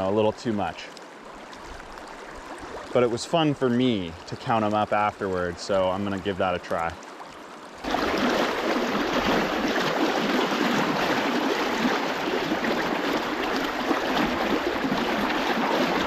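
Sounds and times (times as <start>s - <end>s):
river water rushing: 6.9s - 16.0s.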